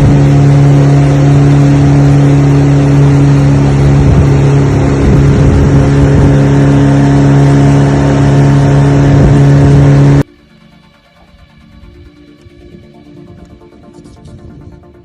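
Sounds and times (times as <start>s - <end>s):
engine low hum: 0.0s - 10.3s.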